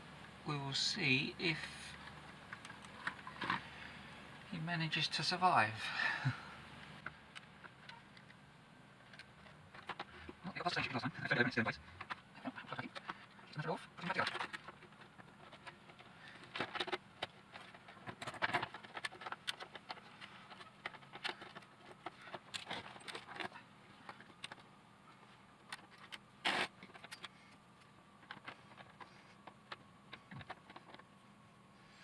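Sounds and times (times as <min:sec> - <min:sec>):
small plastic parts clicking and rattling: 0:09.0 - 0:10.9, 0:12.0 - 0:31.2.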